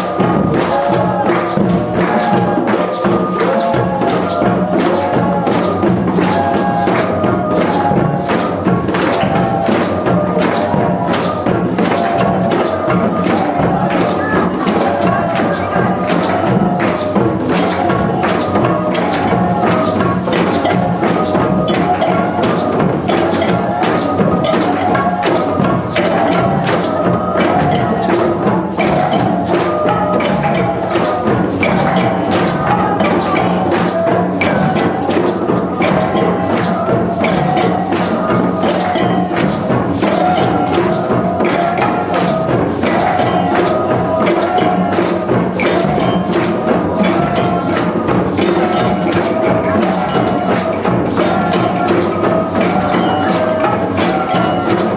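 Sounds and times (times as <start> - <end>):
wooden percussion strikes: 0.0 - 54.9.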